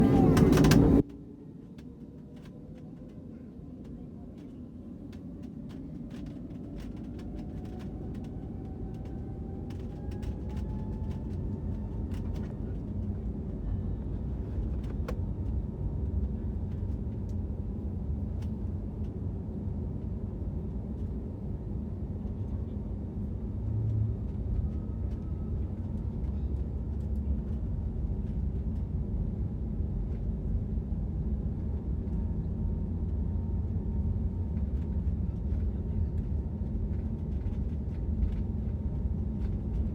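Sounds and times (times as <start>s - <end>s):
jet engine whine rising: 0.0s - 1.1s
low engine rumble: 0.0s - 39.9s.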